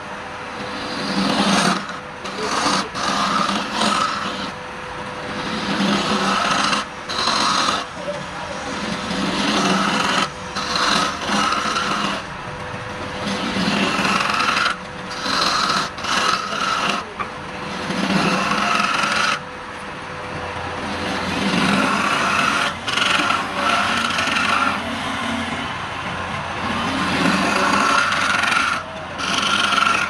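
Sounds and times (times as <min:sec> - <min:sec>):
wood lathe humming: 0:00.0 - 0:30.0
tool scraping spinning bowl: 0:00.6 - 0:19.8, 0:20.6 - 0:30.0.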